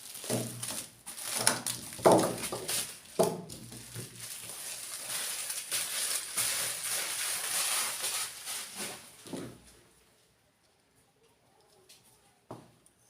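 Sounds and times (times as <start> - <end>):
packaging rustling and crinkling: 0.0 - 9.8.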